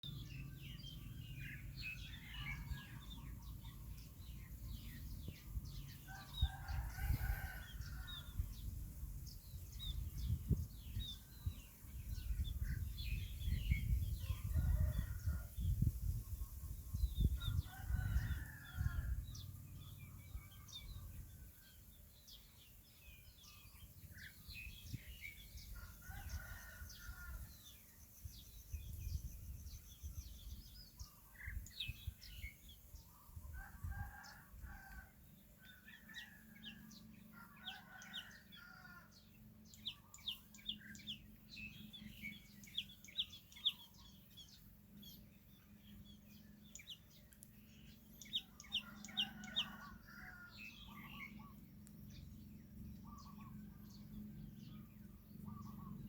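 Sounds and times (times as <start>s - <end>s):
small birds chirping: 0.0s - 35.0s, 36.0s - 56.0s
rooster crowing: 6.1s - 8.4s, 17.4s - 19.2s, 48.5s - 51.4s.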